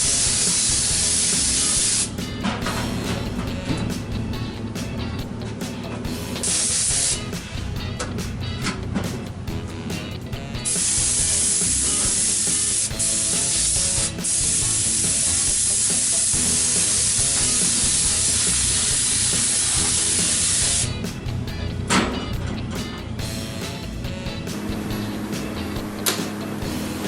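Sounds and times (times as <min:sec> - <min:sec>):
paint spray gun hissing: 0:00.0 - 0:02.2, 0:06.4 - 0:07.4, 0:10.6 - 0:21.0.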